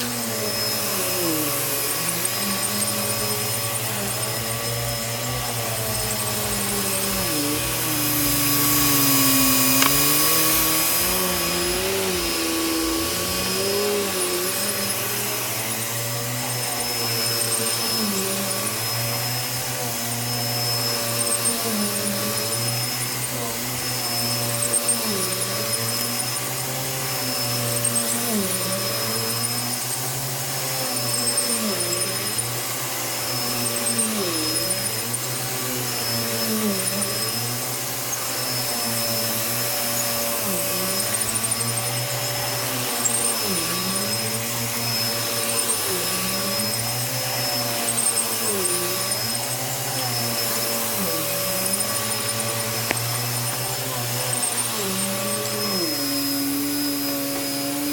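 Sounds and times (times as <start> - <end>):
vacuum cleaner running: 0.0 - 57.9.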